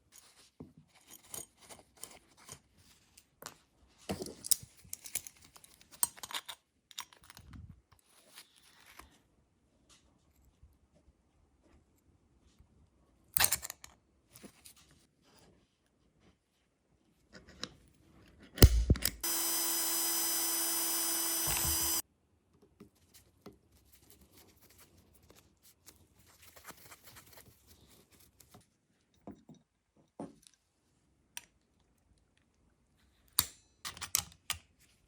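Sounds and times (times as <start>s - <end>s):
small power tool running: 18.6s - 22.0s.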